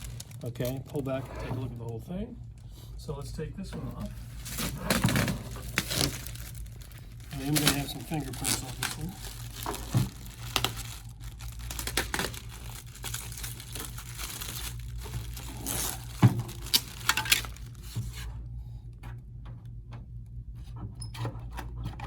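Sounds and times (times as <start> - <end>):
plastic film peeling: 0.0 - 2.7, 4.1 - 18.0.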